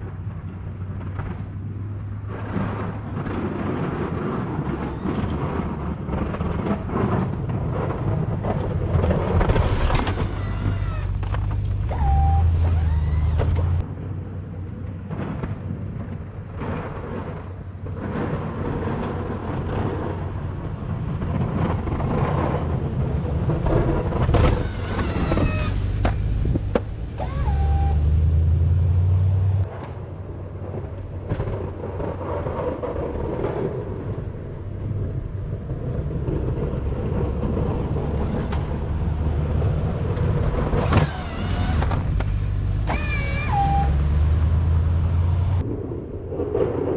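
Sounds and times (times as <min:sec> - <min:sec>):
vehicle engine running: 0:08.2 - 0:13.8, 0:20.8 - 0:29.7, 0:35.9 - 0:45.6
loud low hum: 0:09.4 - 0:13.8, 0:21.4 - 0:29.7
short rising and falling whines: 0:09.5 - 0:13.8, 0:22.7 - 0:29.7, 0:40.6 - 0:45.6.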